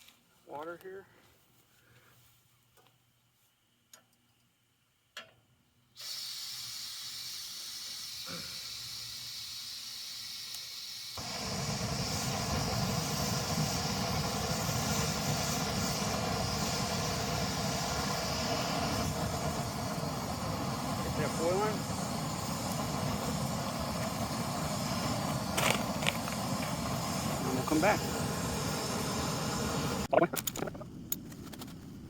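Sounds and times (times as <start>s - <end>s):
gas hissing from valve: 6.0s - 31.3s
gas burner running: 6.0s - 32.0s.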